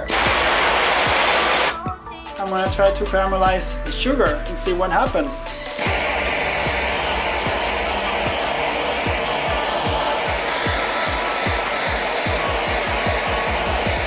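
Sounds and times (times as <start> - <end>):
blowtorch flame hissing: 0.0 - 1.8, 5.6 - 14.0
kick drum beats of music: 0.0 - 14.0.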